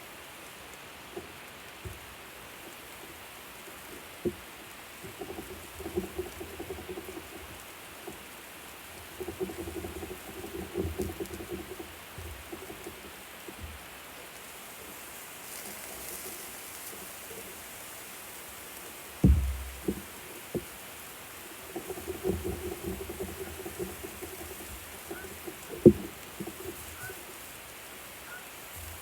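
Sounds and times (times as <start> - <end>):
knocks: 19.2 - 20.7, 21.8 - 27.2.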